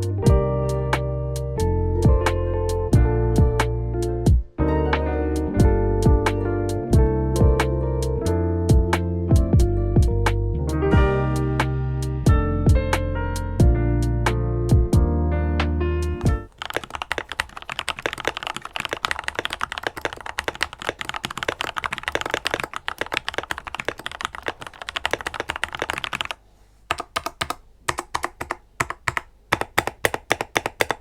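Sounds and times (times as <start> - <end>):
mechanical keyboard typing: 16.2 - 31.0.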